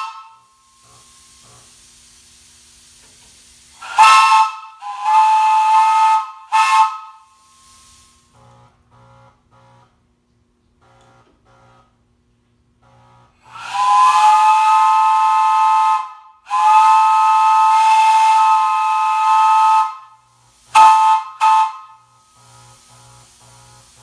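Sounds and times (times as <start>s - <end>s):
steam whistle blasts: 0.0s - 2.8s, 3.7s - 8.6s, 13.4s - 24.0s
air hiss: 0.0s - 8.4s, 13.4s - 24.0s.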